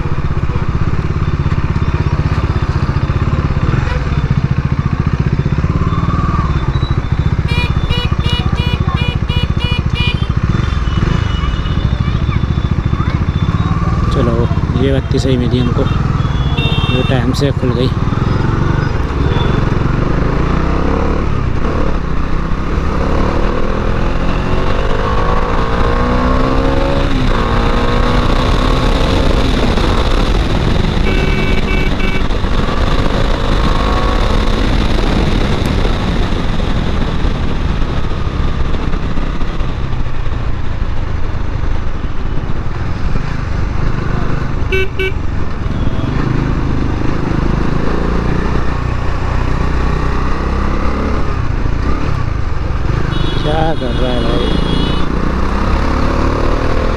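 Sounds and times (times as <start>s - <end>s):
motorcycle engine accelerating: 0.0s - 56.9s
vehicle horn toots: 7.3s - 12.6s, 15.5s - 17.4s, 31.0s - 32.4s, 44.7s - 46.3s, 53.1s - 55.2s.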